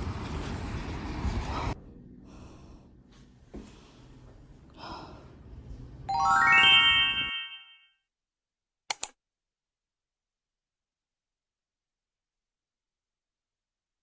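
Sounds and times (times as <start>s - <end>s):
soft sighing breaths: 1.5s - 5.8s
bright rising chime run: 6.1s - 7.8s.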